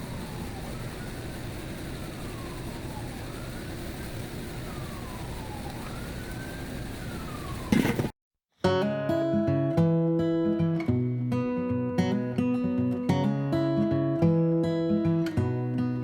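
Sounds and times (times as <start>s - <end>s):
emergency vehicle siren wailing: 0.0s - 8.1s.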